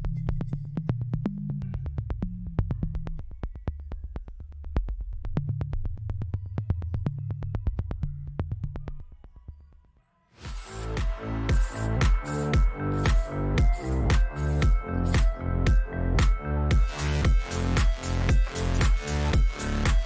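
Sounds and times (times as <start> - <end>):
drum machine beat: 10.4 - 20.0
synthesizer bass line: 10.4 - 20.0.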